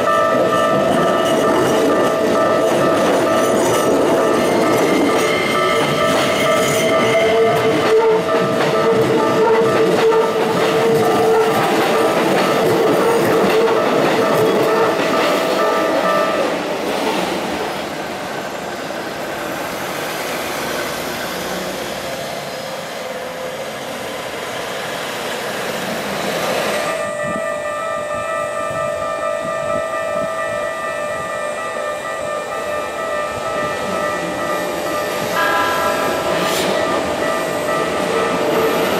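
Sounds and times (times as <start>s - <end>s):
crossing warning alarm ringing: 0.0s - 16.8s, 26.8s - 38.9s
train wheels clattering: 0.0s - 17.9s, 33.6s - 38.9s.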